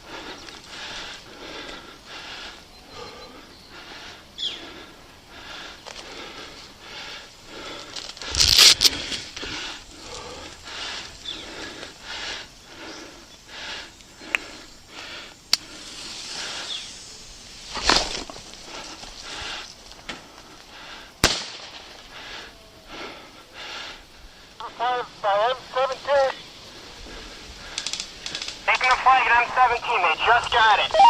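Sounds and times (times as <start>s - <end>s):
footsteps crunching through leaves: 8.0s - 9.3s
foliage brushing microphone: 8.2s - 9.4s
sharp clicks: 27.7s - 29.0s.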